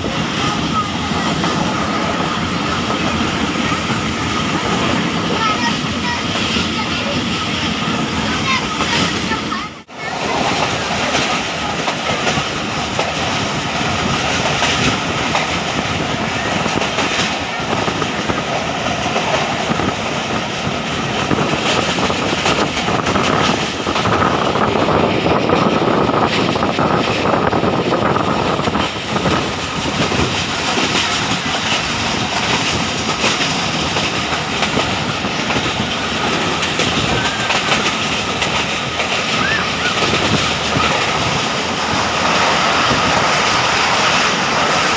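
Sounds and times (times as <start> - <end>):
train wheels rumbling on rail: 0.0 - 44.9.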